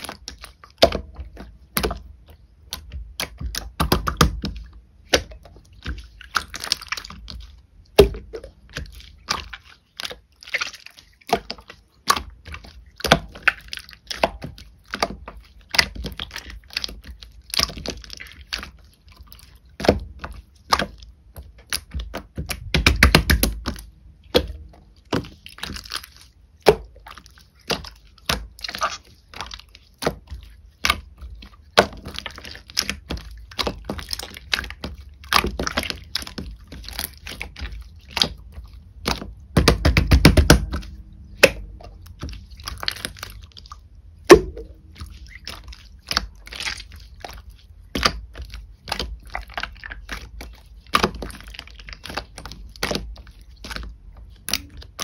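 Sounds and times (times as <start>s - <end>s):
slime squishing by hand: 0.0s - 55.0s
slime popping when squeezed: 44.2s - 46.9s.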